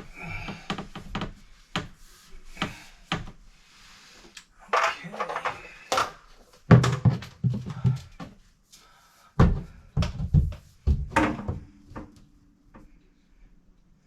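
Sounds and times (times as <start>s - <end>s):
hard knocks and clunks: 9.4s - 12.2s.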